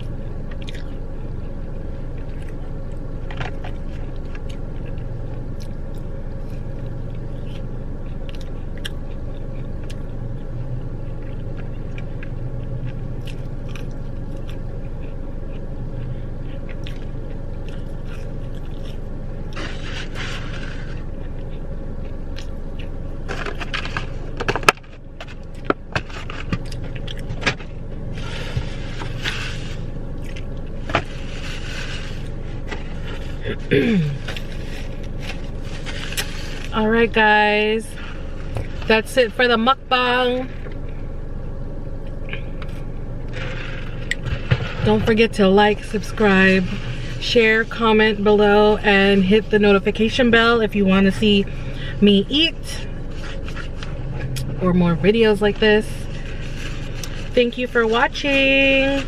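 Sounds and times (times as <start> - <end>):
low hum inside a car: 0.0 - 59.0
rustling: 23.2 - 37.0, 52.8 - 54.4, 55.5 - 59.0.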